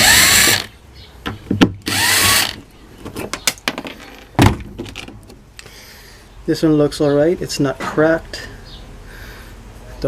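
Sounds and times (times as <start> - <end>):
power drill whirring: 0.0 - 0.7, 1.8 - 2.6.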